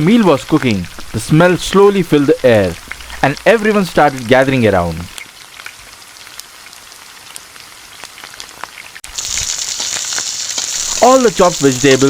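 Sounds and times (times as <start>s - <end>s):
faint crackling with ticks: 0.0s - 4.3s
vegetables sizzling in oil: 0.0s - 12.0s.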